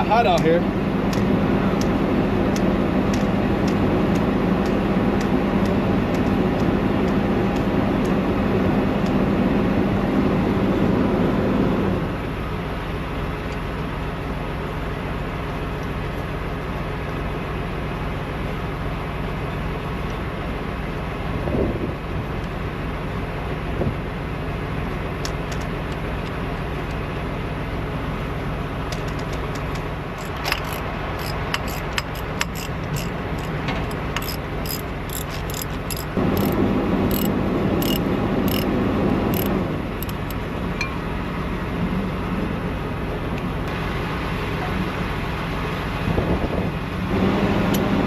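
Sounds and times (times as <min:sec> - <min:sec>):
diesel truck engine idling: 0:00.0 - 0:47.1
hand tools clinking on metal: 0:29.2 - 0:38.7.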